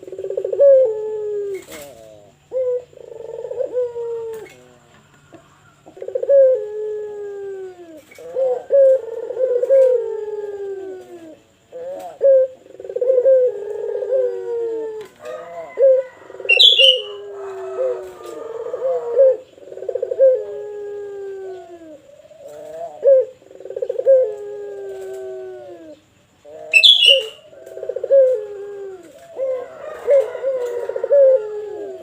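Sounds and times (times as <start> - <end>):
dove cooing: 0.0 - 32.0
small bird chirp: 16.5 - 17.2, 25.9 - 27.7.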